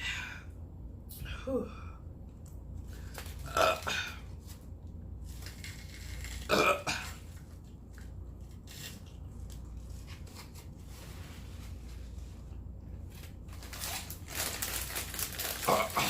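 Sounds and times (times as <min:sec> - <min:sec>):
person burping loudly: 0:03.4 - 0:04.2.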